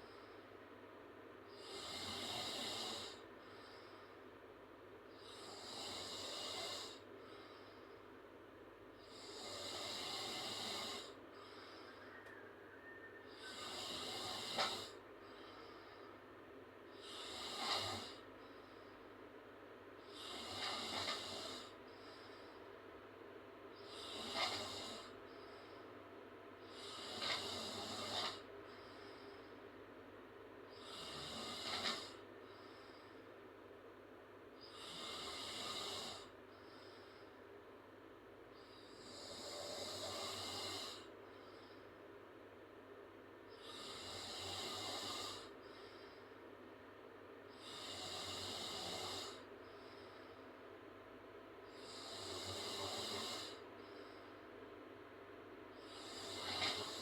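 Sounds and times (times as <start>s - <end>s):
girl snoring: 9.1s - 11.2s, 13.3s - 15.0s, 17.0s - 18.2s, 20.1s - 21.8s, 23.8s - 25.2s, 26.7s - 28.5s, 30.8s - 32.2s, 39.0s - 41.1s, 43.6s - 45.5s, 51.8s - 53.6s, 55.9s - 57.0s.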